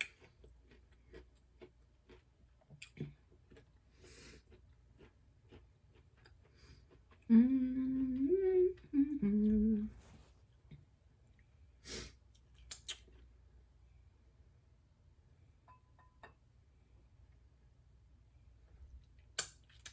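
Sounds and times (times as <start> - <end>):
woman humming: 7.3 - 10.2.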